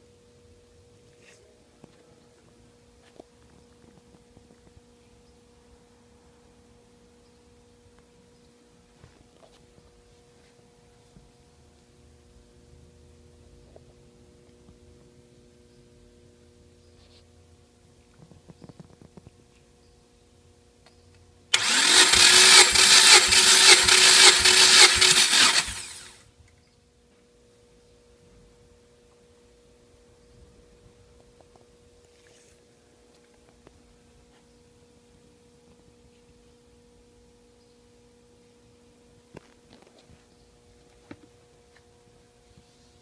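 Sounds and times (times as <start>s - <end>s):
faint steady hum: 0.0s - 43.0s
starter motor cranking engine: 21.5s - 26.2s.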